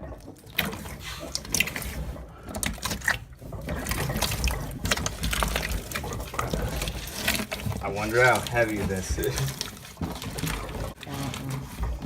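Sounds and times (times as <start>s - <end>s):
slime squelching and popping: 0.0s - 12.0s.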